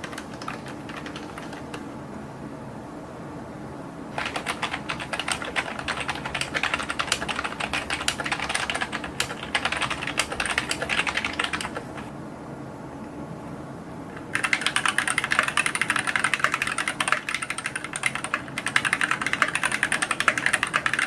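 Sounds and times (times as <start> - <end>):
fast typing on keyboard: 0.0 - 1.8, 4.2 - 12.1, 14.3 - 21.0.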